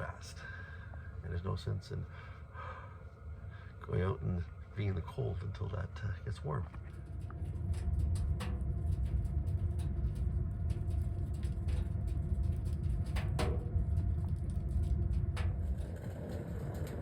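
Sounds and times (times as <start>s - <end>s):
wood fire crackling in stove: 0.0s - 17.0s.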